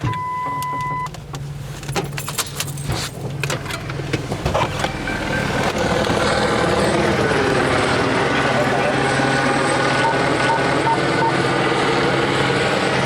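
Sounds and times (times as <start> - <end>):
car handling clicks: 0.0 - 6.2
keys jangling: 1.8 - 3.2
helicopter rotor and engine: 5.2 - 13.0.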